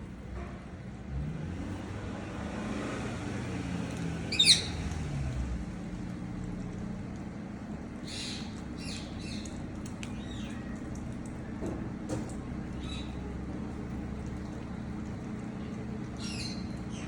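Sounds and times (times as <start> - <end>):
vehicle engine passing: 0.3 - 9.8.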